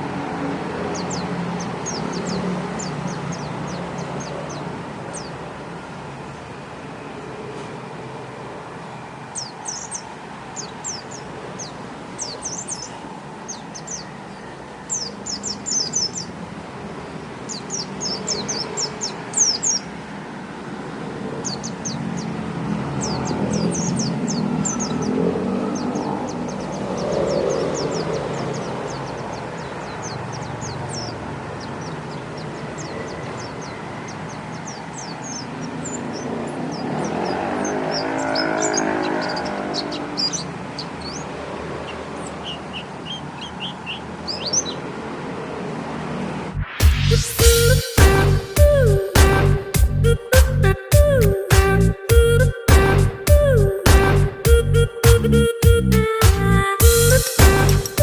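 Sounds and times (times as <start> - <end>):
small bird chirping: 0.8 - 6.5, 9.0 - 16.4, 17.1 - 19.9, 21.4 - 44.9.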